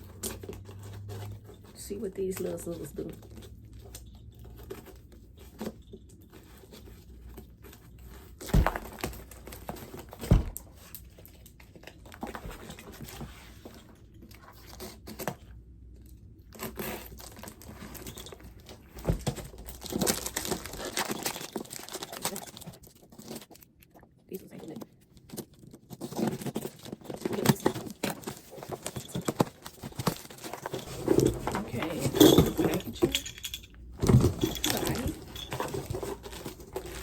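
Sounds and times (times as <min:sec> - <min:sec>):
wrapping crinkling and rustling: 0:00.0 - 0:37.0
scissors cutting package: 0:19.4 - 0:23.6.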